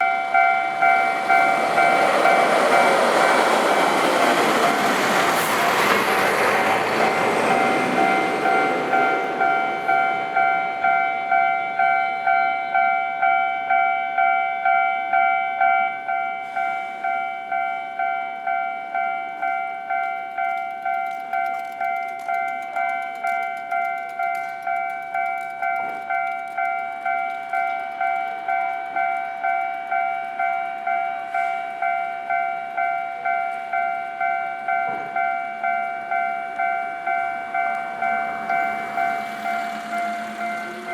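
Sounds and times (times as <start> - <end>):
electric train passing: 0.0 - 13.4, 16.0 - 40.9
level-crossing warning bell clanging: 0.0 - 40.9.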